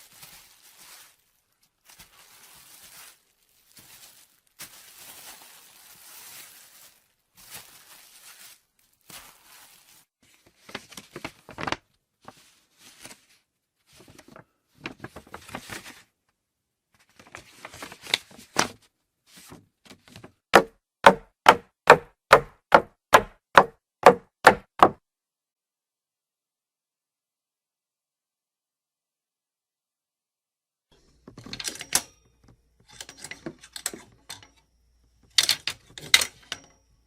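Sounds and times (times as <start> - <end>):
sharp knocks: 20.6 - 25.0.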